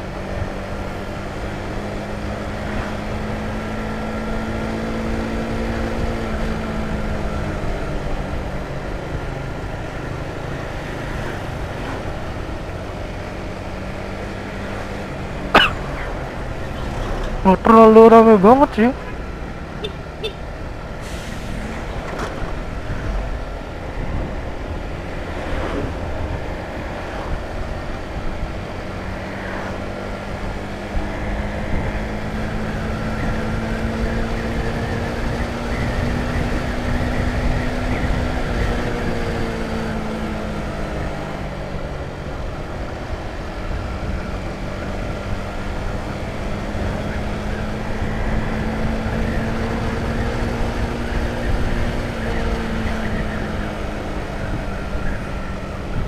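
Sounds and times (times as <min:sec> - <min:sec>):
wind rumble on microphone: 0:20.7 - 0:56.0.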